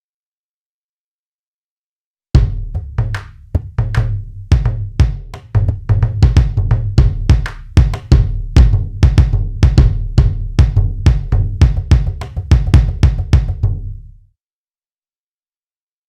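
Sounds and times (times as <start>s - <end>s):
sampled drum strokes: 2.4s - 13.9s.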